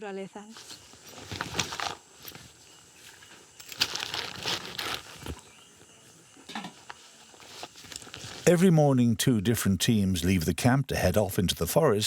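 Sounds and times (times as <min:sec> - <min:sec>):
rustling and scuffing: 0:00.4 - 0:08.5.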